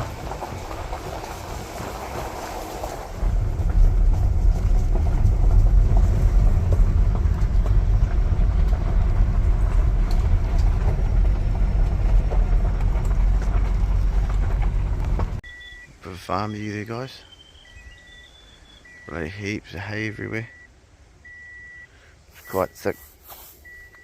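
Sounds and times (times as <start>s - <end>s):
car rumbling on rough track: 0.0s - 15.4s.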